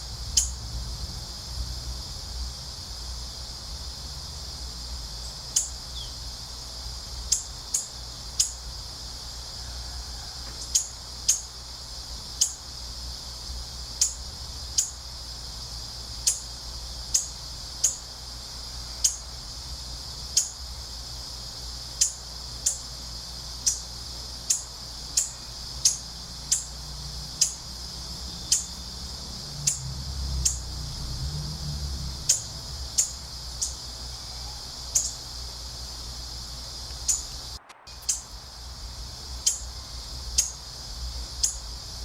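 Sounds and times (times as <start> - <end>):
low wind rumble: 0.0 - 6.9, 27.7 - 42.0
steady high hiss: 0.0 - 42.0
bird chirping: 5.2 - 6.3, 32.2 - 35.4, 36.9 - 38.3.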